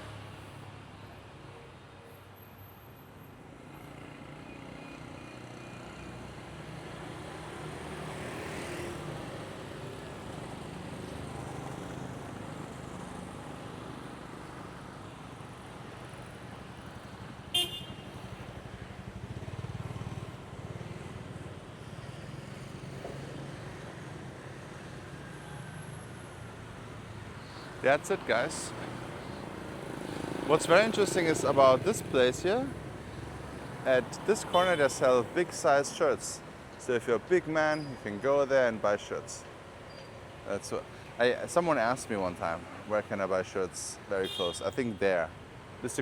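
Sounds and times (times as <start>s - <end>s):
road traffic passing: 3.1s - 46.0s
vehicle horn toot: 17.6s - 18.1s, 44.2s - 44.7s.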